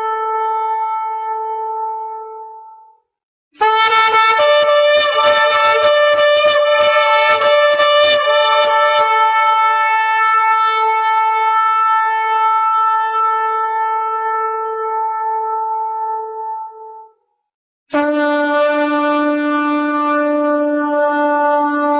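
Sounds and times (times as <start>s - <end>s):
ram's horn trumpet blast: 3.6s - 16.4s, 17.9s - 21.9s.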